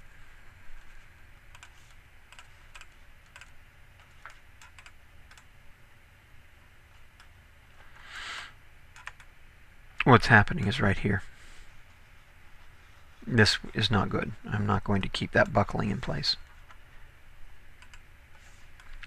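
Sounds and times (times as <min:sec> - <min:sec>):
low steady hum: 0:00.0 - 0:19.0
soft hiss: 0:00.0 - 0:19.0
computer mouse and key clicks: 0:01.5 - 0:05.5, 0:08.9 - 0:09.3, 0:17.8 - 0:19.0.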